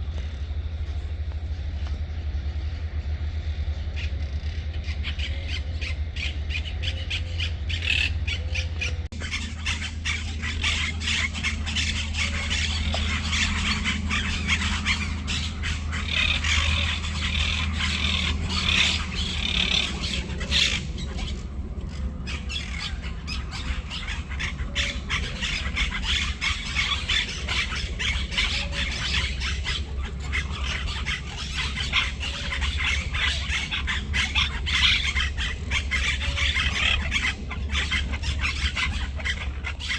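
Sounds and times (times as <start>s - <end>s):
flock of birds chirping: 0.0s - 39.9s
steady low hum: 0.0s - 39.9s.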